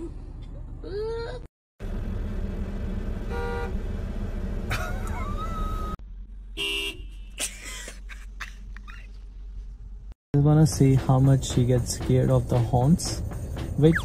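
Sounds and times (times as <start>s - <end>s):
vehicle rumble: 0.0s - 14.0s
car horn toots: 3.2s - 3.8s, 6.6s - 7.4s.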